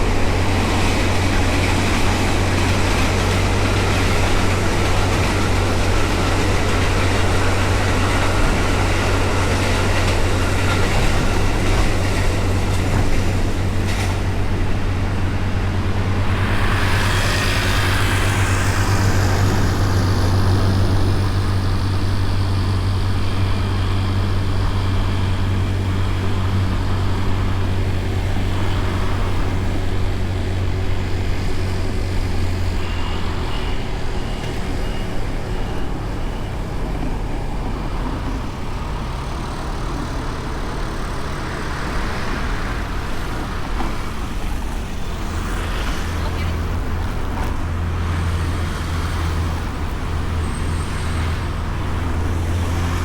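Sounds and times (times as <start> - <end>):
road and wind noise: 0.0 - 53.0
scooter engine running: 14.4 - 30.3
vehicle passing: 15.6 - 24.1.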